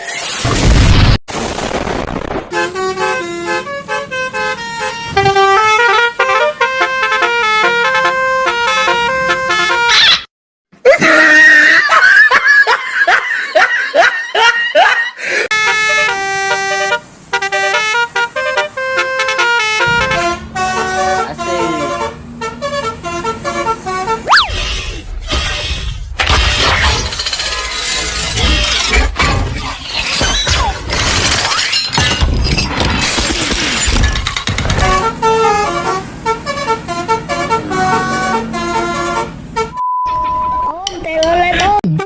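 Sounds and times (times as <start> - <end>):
musical air horn tune: 2.5 - 9.9, 15.5 - 24.5, 34.8 - 39.8.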